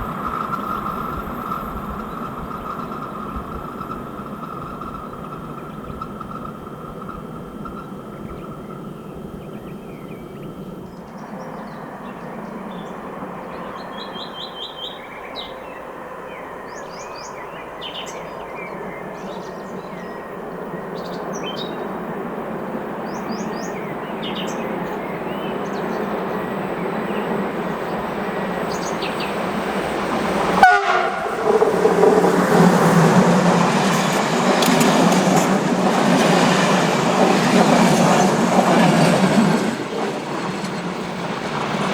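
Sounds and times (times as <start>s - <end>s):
electric locomotive rumble: 0.0s - 15.3s, 16.1s - 41.9s
rush of passing train: 0.0s - 41.9s
birds chirping: 22.7s - 41.9s.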